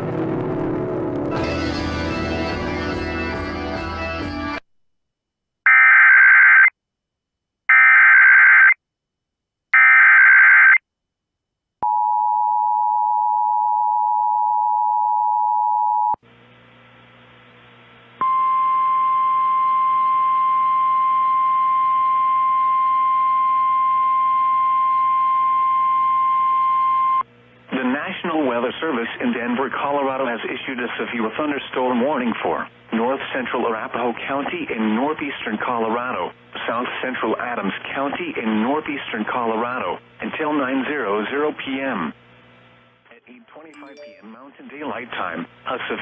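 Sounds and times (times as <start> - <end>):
faint radio hiss and hum: 27.5 - 46.0
two-tone attention signal: 43.8 - 44.5.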